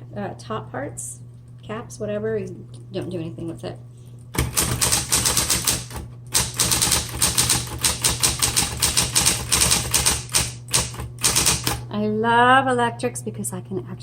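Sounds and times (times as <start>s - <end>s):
steady low hum: 0.0s - 14.0s
electric typewriter typing fast: 4.4s - 11.8s.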